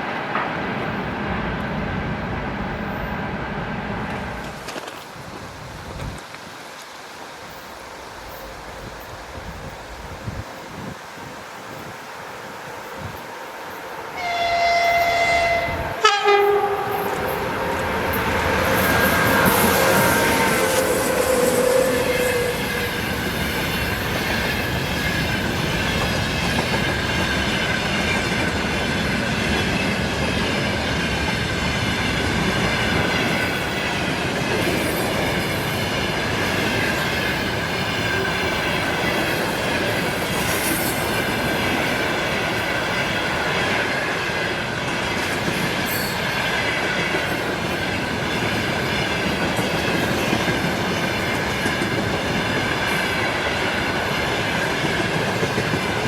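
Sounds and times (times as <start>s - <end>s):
train horn blasts: 14.1s - 23.2s
train wheels rumbling and clattering: 14.1s - 56.0s.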